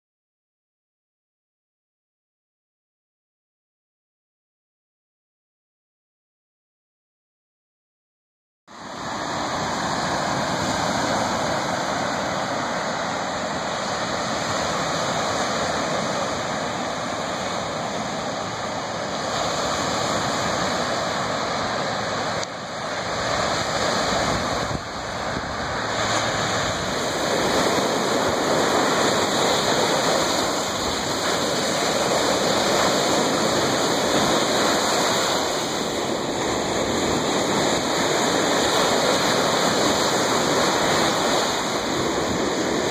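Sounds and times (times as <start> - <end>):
waves washing onto shore: 8.7 - 42.9.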